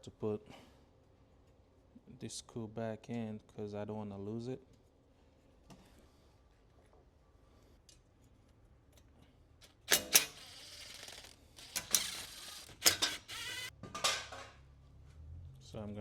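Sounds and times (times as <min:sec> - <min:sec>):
ratchet clicking: 0:09.9 - 0:13.7.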